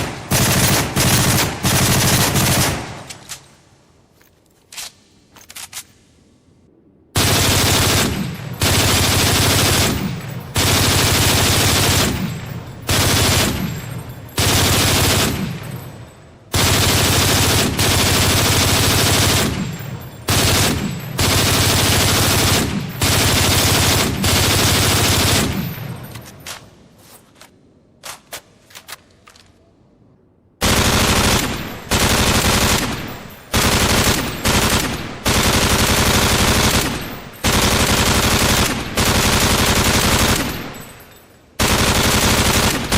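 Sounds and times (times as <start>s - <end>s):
automatic gunfire bursts: 0.0s - 3.1s, 7.2s - 15.6s, 16.5s - 25.8s, 30.6s - 40.8s, 41.6s - 42.9s.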